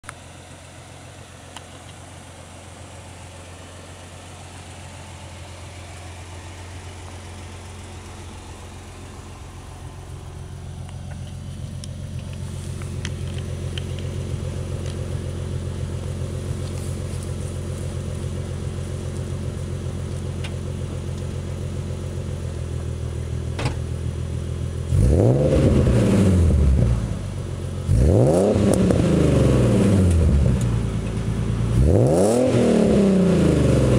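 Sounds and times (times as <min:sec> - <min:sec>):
car engine idling: 0:00.0 - 0:33.9
car engine revving: 0:24.7 - 0:33.9.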